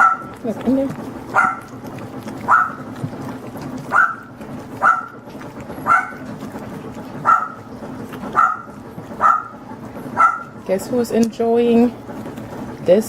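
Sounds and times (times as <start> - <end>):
dog yapping: 0.0 - 0.4, 1.2 - 6.5, 7.1 - 10.6.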